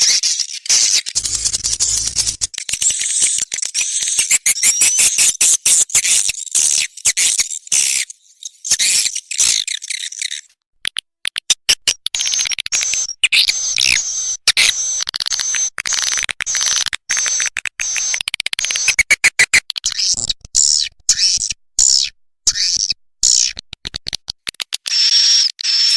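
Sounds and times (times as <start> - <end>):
rapid clicks: 1.1 - 4.4
swiftlets twittering chirps: 1.2 - 5.4.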